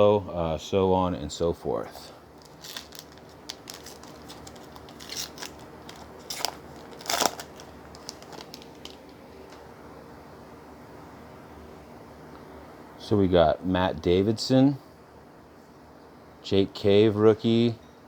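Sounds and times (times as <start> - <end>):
wrapper crackling and ripping: 2.4 - 9.6.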